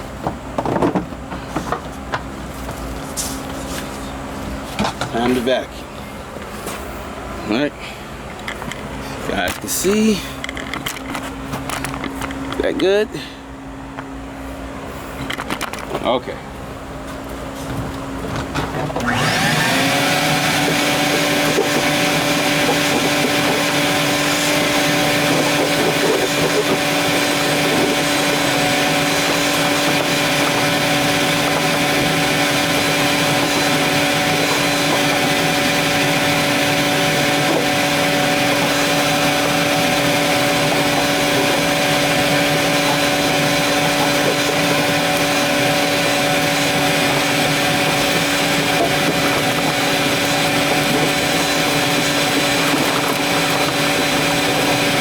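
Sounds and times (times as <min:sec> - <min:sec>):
vacuum cleaner running: 0:17.2 - 0:55.0.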